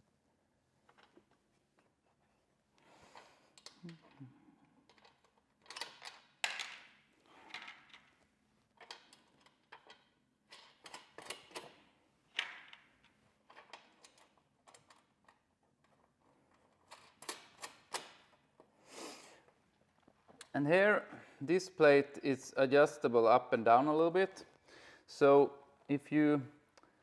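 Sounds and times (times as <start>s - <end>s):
screws and nuts being handled: 4.8s - 6.7s, 8.8s - 11.8s, 13.0s - 18.7s.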